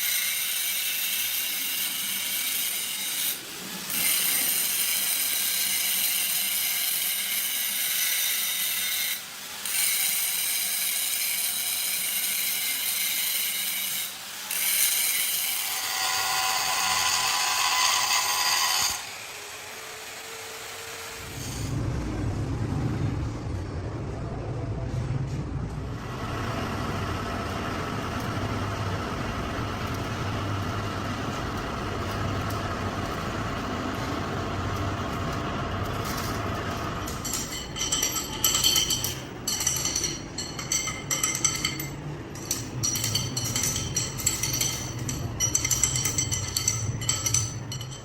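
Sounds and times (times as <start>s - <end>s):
workshop machine humming: 25.7s - 48.0s.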